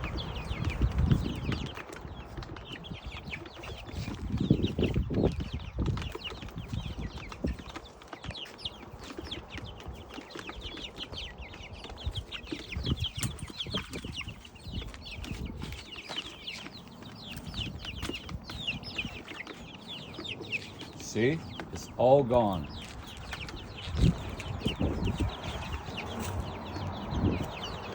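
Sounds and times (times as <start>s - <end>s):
chickens peeping and clucking: 0.0s - 27.9s.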